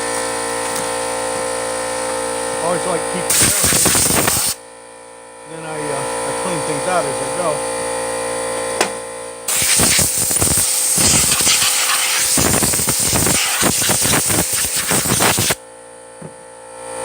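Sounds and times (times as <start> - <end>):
compressed air spraying hiss: 3.3 - 4.6, 9.5 - 15.6.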